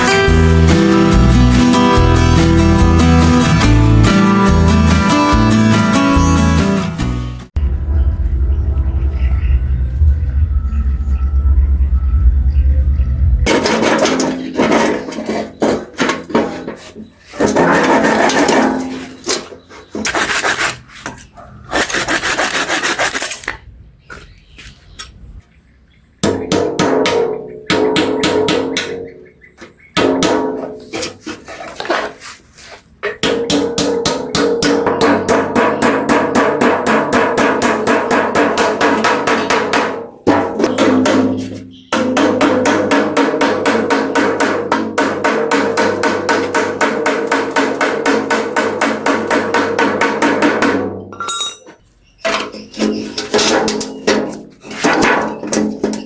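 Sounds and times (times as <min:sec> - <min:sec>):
rapid ringing knocks: 0:33.2 - 0:51.7.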